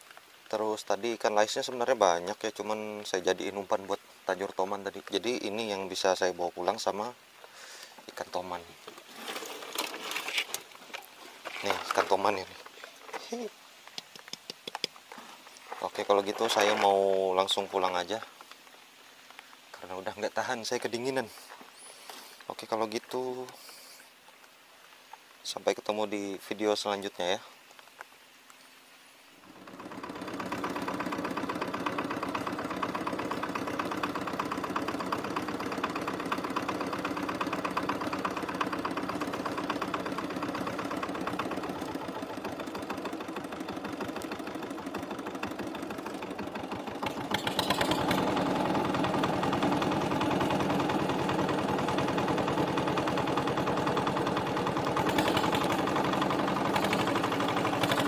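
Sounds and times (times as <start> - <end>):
small engine running: 29.4 - 58.0.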